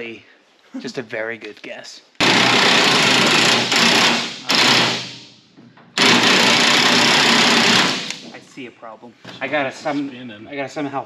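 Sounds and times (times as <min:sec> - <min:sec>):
impact wrench rattling: 0:02.2 - 0:05.3, 0:05.9 - 0:08.3.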